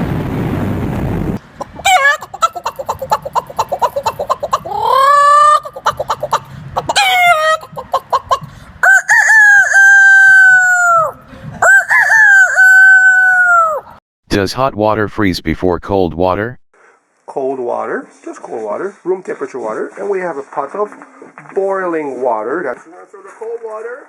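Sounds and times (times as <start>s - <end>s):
rapid clucking: 1.6s - 8.5s
rooster crowing: 8.8s - 14.0s.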